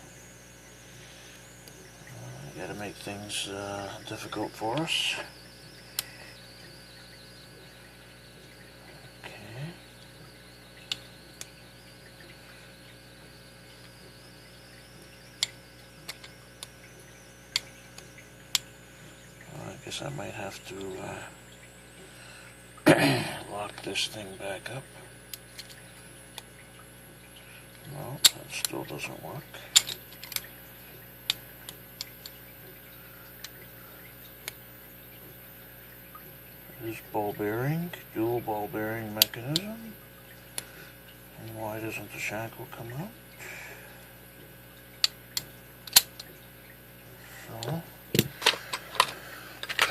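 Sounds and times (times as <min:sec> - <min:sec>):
faint high-pitched hum: 0:00.0 - 0:49.9
metallic clicks of padlock and tools: 0:29.8 - 0:30.5
padlock clicking: 0:45.0 - 0:46.3.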